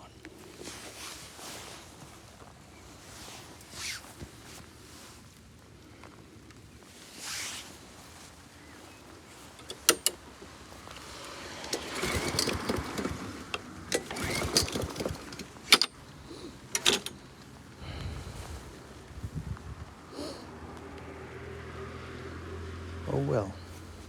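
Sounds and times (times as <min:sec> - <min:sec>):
lawn mower cranking: 0:09.4 - 0:18.0
sharp clicks and knocks: 0:09.6 - 0:10.2, 0:10.9 - 0:16.0, 0:16.7 - 0:17.2.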